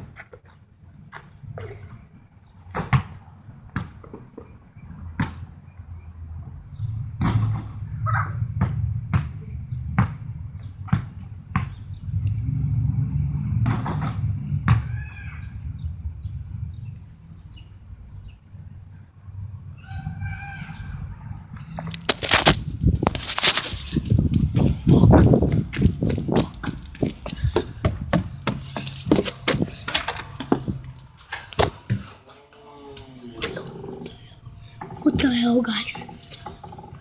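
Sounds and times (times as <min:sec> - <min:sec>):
basketball bouncing on hard ground: 0:02.7 - 0:04.5, 0:08.6 - 0:12.0, 0:13.6 - 0:15.0, 0:21.8 - 0:31.0
wind rumble on microphone: 0:11.7 - 0:21.8, 0:22.4 - 0:30.9.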